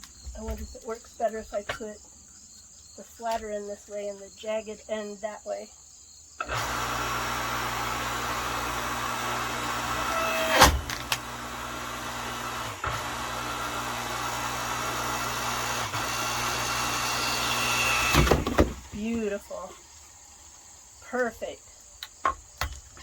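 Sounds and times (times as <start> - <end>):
log splitter motor humming: 6.4 - 19.4
wood splitting crack: 9.4 - 19.0.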